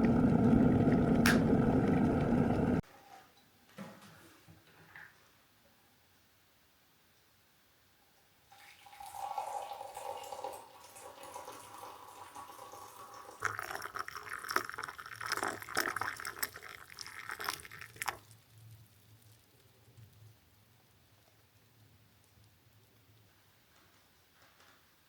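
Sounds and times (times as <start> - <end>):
liquid pouring into a cup: 0.0 - 2.8, 8.5 - 18.8.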